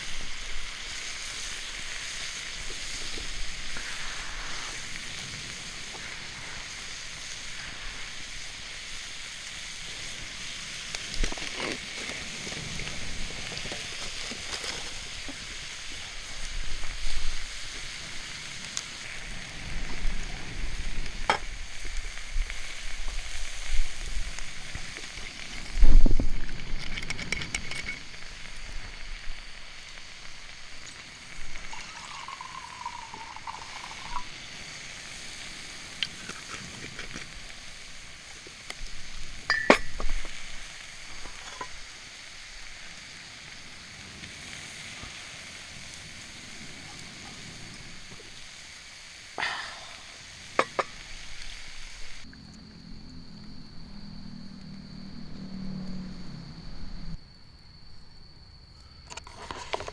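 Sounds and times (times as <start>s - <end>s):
mushrooms sizzling on grill: 0.0s - 58.1s
sharp clinks and knocks: 39.5s - 40.2s.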